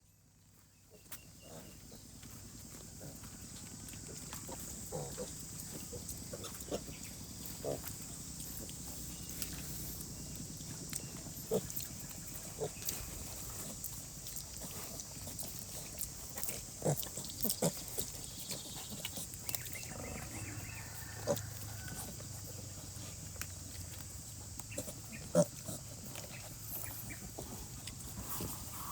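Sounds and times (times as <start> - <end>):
pigs grunting: 0.9 - 28.9.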